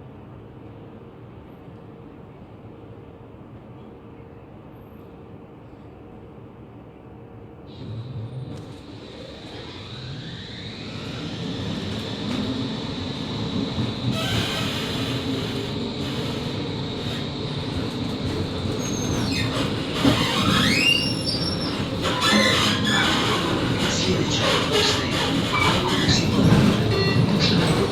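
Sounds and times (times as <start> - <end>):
tram electric drive whine: 7.4 - 27.9
tram running noise: 7.7 - 27.9
tram wheels squealing: 8.8 - 27.9.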